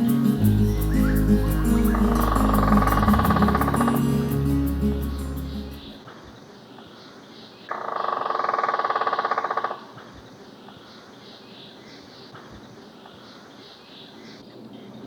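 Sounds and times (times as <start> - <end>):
background music: 0.0 - 6.0
woodpecker drumming on a tree: 0.6 - 4.0, 7.7 - 10.2.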